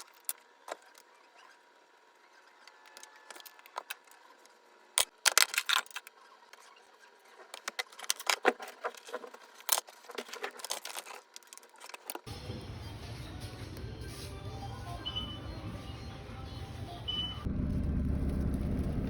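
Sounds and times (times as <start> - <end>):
small hard objects clicking: 2.9 - 4.2, 7.5 - 12.3.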